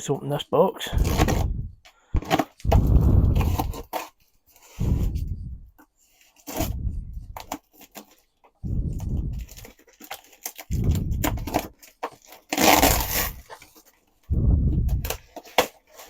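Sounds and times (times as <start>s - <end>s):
packing tape peeled off box: 9.2s - 14.0s.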